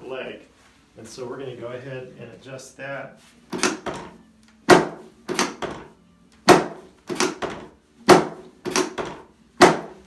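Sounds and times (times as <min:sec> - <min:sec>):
sharp knocks of chiropractic adjustment: 0:03.5 - 0:10.0.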